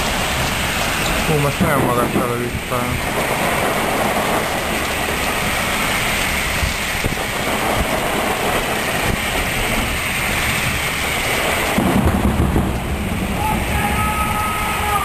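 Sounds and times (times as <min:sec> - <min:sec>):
storm wind and rain: 0:00.0 - 0:15.0
wind buffeting microphone: 0:00.0 - 0:15.0.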